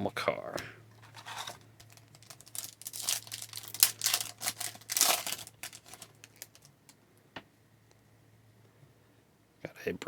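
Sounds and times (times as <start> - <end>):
card pack wrapper crinkling: 1.0 - 6.9.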